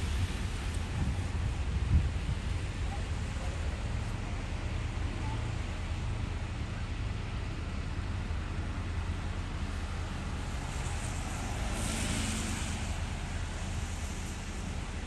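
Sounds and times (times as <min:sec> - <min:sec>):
wind buffeting microphone: 0:00.0 - 0:03.8.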